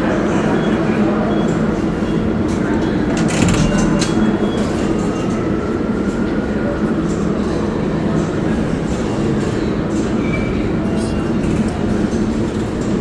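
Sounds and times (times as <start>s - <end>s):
subway train rumble: 0.0s - 13.0s
faint train squeal: 9.6s - 11.3s.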